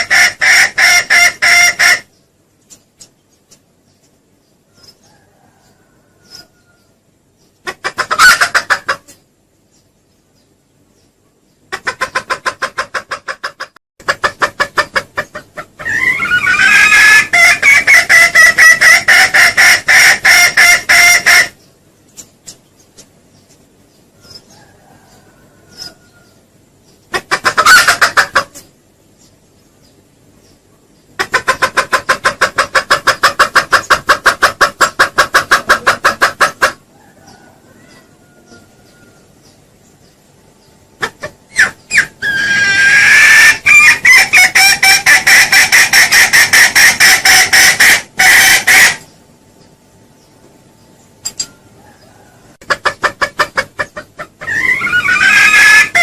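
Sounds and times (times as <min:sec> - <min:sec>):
rapid clucking bird call: 0:00.0 - 0:04.1, 0:07.5 - 0:09.2, 0:11.6 - 0:26.1, 0:27.0 - 0:28.8, 0:31.0 - 0:38.7, 0:41.0 - 0:49.1, 0:51.8 - 0:56.0.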